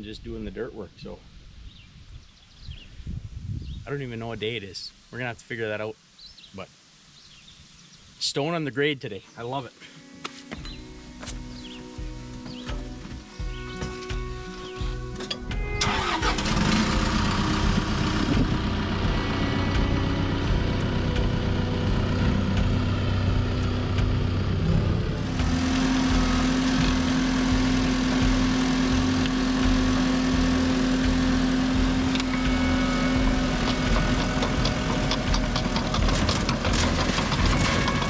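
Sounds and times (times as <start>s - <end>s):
diesel engine running under load: 11.6s - 38.0s.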